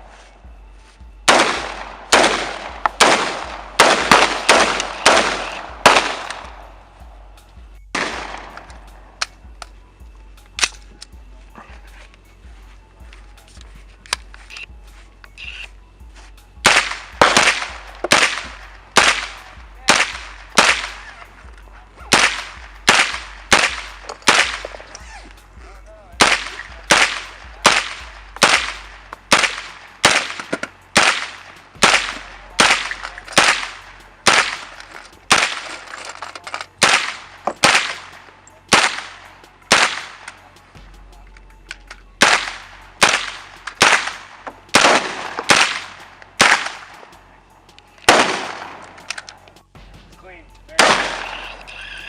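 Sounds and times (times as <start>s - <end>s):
gunshots with echo: 1.2s - 7.0s, 7.9s - 9.2s, 16.6s - 21.3s, 22.1s - 25.0s, 26.2s - 36.0s, 36.8s - 40.4s, 42.2s - 47.2s, 48.0s - 49.3s, 50.7s - 51.6s.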